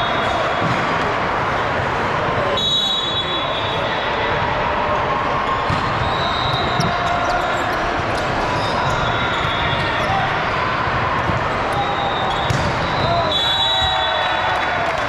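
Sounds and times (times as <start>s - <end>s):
sneaker squeaks: 5.5s - 10.2s, 11.6s - 14.0s
balls thudding on court: 12.4s - 13.2s.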